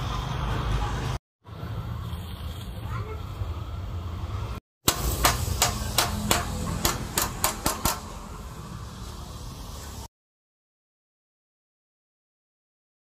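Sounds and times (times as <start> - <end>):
sharp knocks: 4.9 - 8.1.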